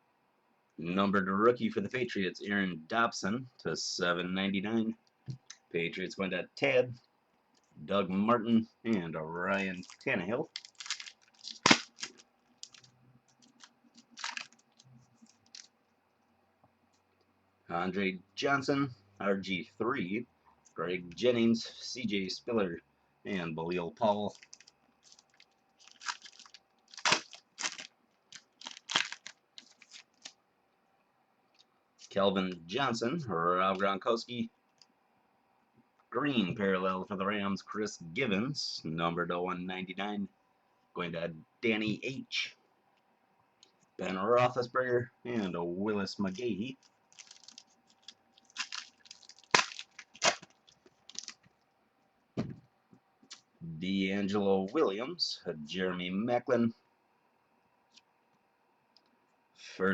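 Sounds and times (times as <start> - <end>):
card pack crinkling: 9.6 - 15.8, 24.0 - 30.4, 46.2 - 51.5
cards snapping: 10.8 - 12.9, 27.0 - 27.9, 48.6 - 51.4.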